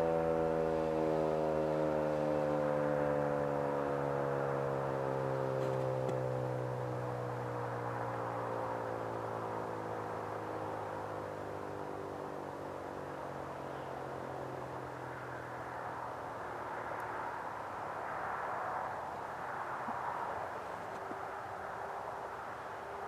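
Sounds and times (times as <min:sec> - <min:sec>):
tornado siren winding down: 0:00.0 - 0:11.0.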